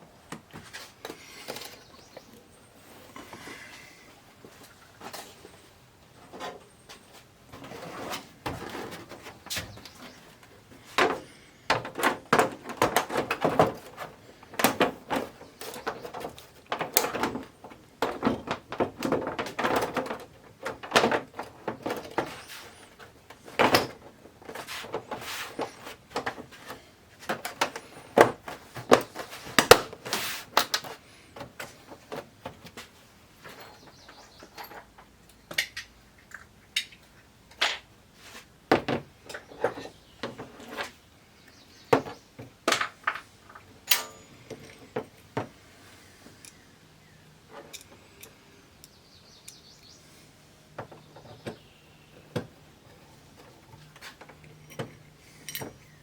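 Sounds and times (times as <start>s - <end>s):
plastic and metal parts clattering: 7.5s - 37.8s, 38.7s - 41.0s, 41.9s - 45.6s, 50.8s - 56.0s
soft rustling and sliding: 24.5s - 33.8s, 38.1s - 38.5s.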